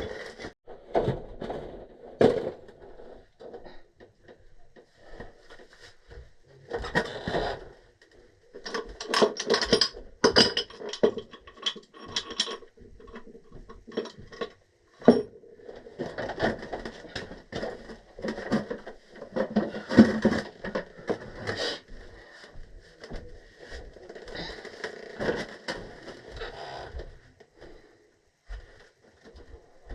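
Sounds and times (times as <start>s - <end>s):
tools clinking on metal pipe: 8.6s - 13.3s.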